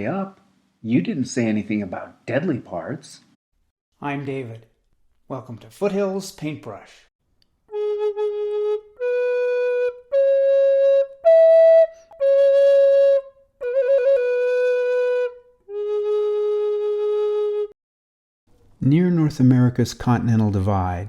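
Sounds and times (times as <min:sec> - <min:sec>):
wind instrument melody: 0:07.7 - 0:17.8.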